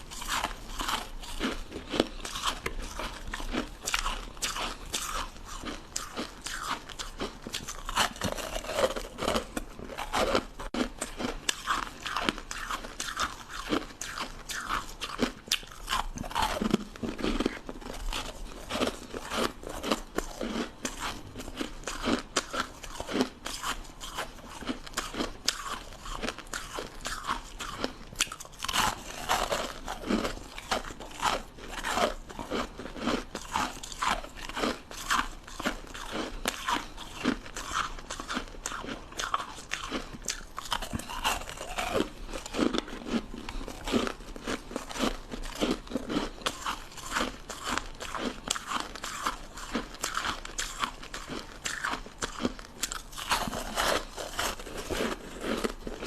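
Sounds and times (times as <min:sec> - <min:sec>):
ice crunching being chewed: 0:00.0 - 0:56.0.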